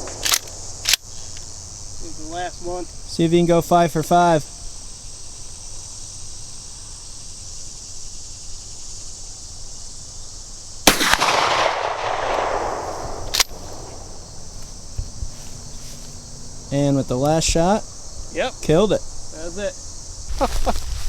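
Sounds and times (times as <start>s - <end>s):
crickets: 0.0s - 21.0s
shotgun shot echoing: 10.8s - 14.3s.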